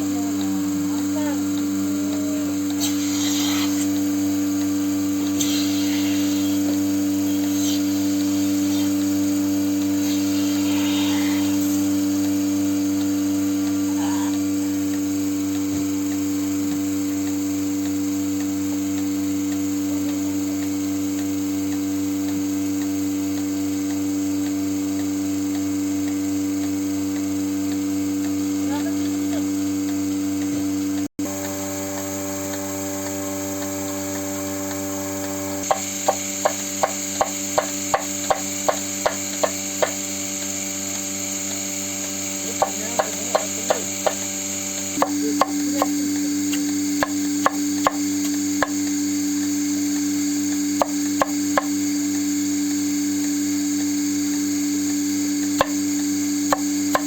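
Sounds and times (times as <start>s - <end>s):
small electric motor humming: 0.0s - 57.0s.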